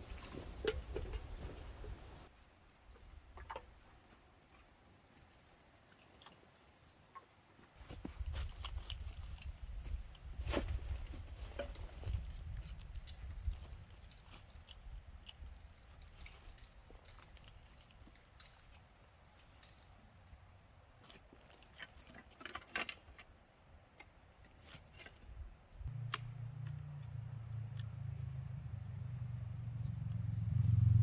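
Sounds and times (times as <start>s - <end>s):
metal items clinking: 0.0s - 1.9s.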